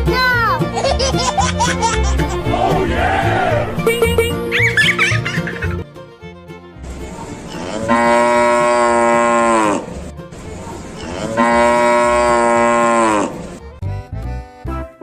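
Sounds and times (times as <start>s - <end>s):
cow mooing: 7.5s - 10.0s, 11.0s - 13.5s.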